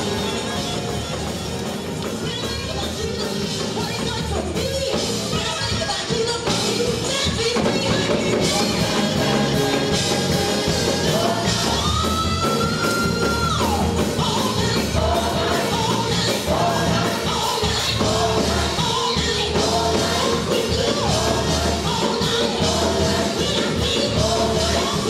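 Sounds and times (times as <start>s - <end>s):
full band playing: 0.0s - 25.0s
person singing gospel: 0.0s - 25.0s.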